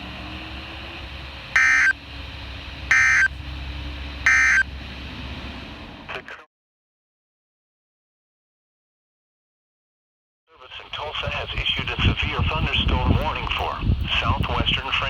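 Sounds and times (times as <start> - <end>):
harsh digital bursts: 1.6 - 1.9, 2.9 - 3.3, 4.3 - 4.6
faint radio hiss: 10.6 - 15.0.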